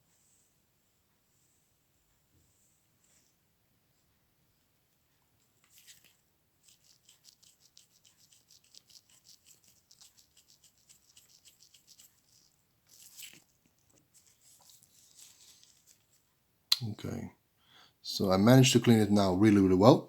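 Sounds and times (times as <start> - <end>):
faint wiping strokes on lens: 1.2 - 3.4, 5.4 - 16.4.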